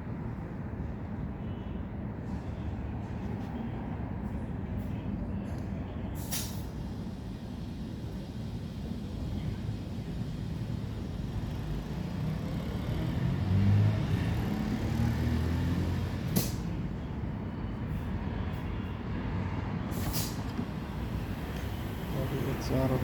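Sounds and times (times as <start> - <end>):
vehicle engine rumbling: 6.1 - 18.9, 19.8 - 23.0
air hisses: 6.2 - 11.8, 19.9 - 23.0.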